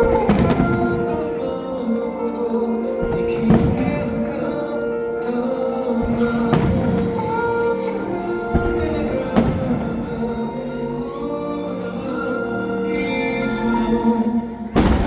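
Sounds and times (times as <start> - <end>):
music with singing: 0.0 - 15.0
firework bursts thudding: 8.5 - 10.2.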